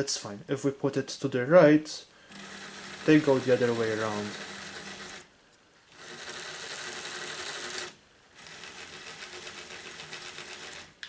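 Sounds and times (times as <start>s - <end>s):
toy motors whirring: 2.3s - 5.3s, 5.9s - 11.0s.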